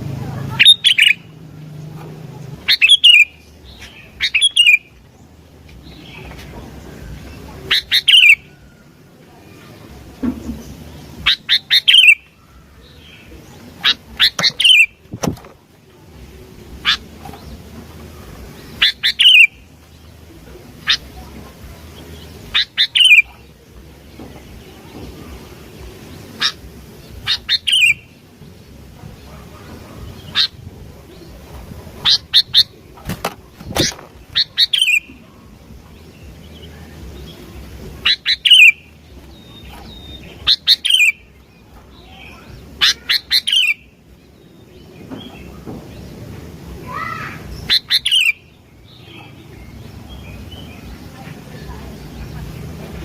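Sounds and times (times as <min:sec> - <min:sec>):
bulbul whistled song: 0:00.6 - 0:01.3, 0:02.7 - 0:03.4, 0:04.2 - 0:04.9, 0:07.7 - 0:08.7, 0:11.3 - 0:12.3, 0:14.2 - 0:15.0, 0:18.8 - 0:19.6, 0:22.6 - 0:23.3, 0:38.1 - 0:38.9, 0:39.5 - 0:41.3.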